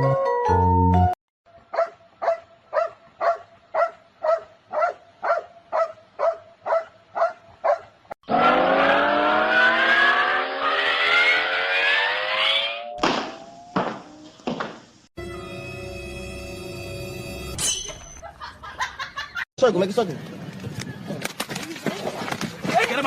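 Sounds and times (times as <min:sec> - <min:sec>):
engine revving up: 0:08.2 - 0:13.8
short pitched squeak: 0:17.6 - 0:18.2.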